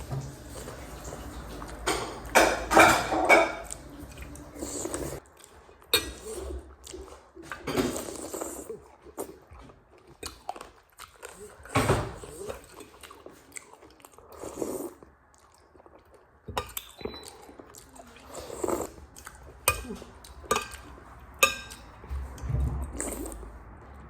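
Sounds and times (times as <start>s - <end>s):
utensils clinking against bowl: 0.0s - 5.2s, 5.9s - 6.5s, 16.5s - 17.6s, 18.3s - 22.4s
person chewing noodles: 0.0s - 24.0s.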